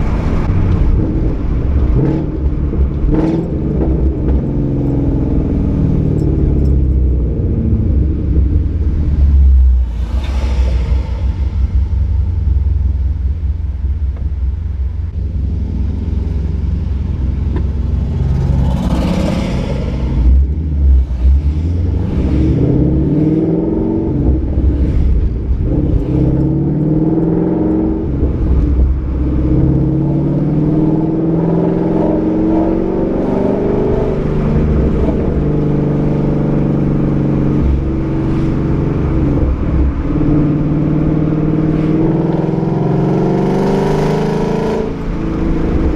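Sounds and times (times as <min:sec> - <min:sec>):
car engine accelerating: 0:00.0 - 0:45.9
brief rushing noise: 0:09.7 - 0:12.9.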